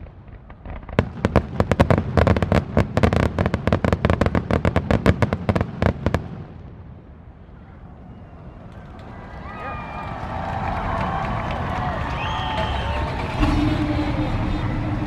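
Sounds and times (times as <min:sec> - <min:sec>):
fireworks cracks and bangs: 0:00.0 - 0:06.8, 0:10.1 - 0:15.0.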